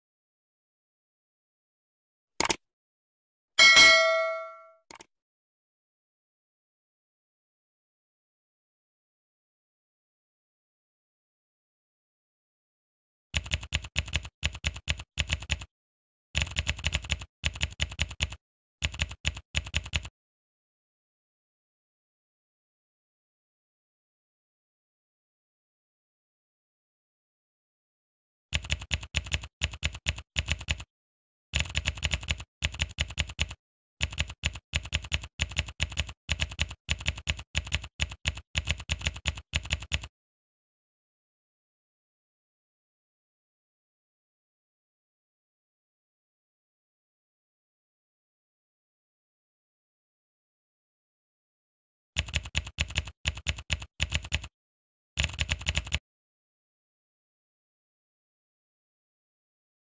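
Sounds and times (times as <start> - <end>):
rapid keyboard typing clicks: 13.4 - 15.7, 16.4 - 20.1, 28.6 - 30.9, 31.6 - 40.1, 52.2 - 54.5, 55.2 - 56.0.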